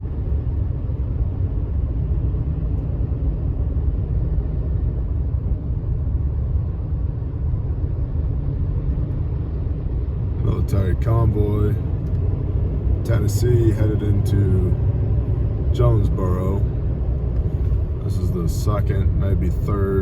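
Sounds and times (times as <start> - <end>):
vehicle road rumble: 0.0 - 20.0.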